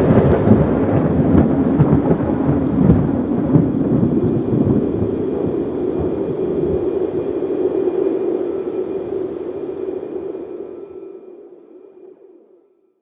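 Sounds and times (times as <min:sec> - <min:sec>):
rolling thunder: 0:00.0 - 0:10.3
steady rain: 0:00.0 - 0:11.1.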